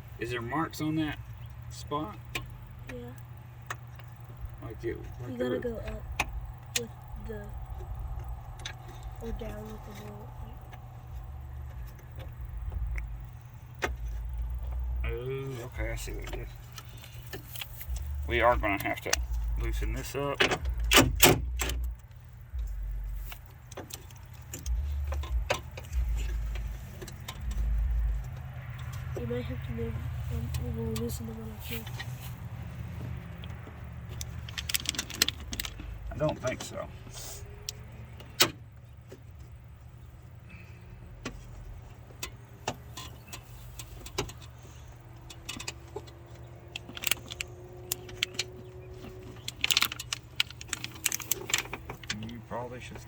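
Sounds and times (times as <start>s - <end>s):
steady low hum: 0.0s - 53.0s
low rumble: 5.8s - 17.1s, 17.8s - 23.5s, 24.6s - 36.2s.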